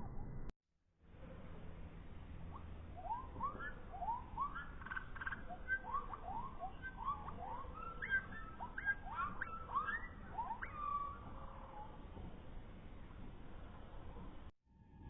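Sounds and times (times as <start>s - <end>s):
slowed birdsong chirps: 2.5s - 12.1s.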